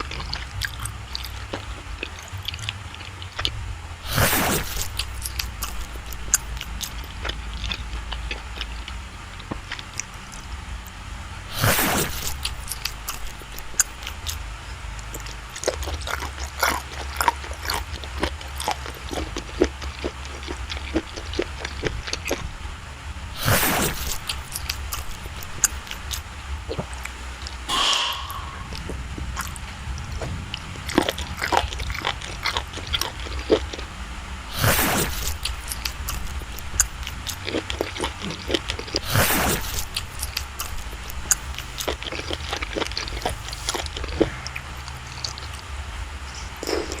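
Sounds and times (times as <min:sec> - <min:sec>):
wet chewing mouth clicks: 0:23.4 - 0:27.6, 0:34.5 - 0:45.6
louder rushes: 0:27.7 - 0:29.5.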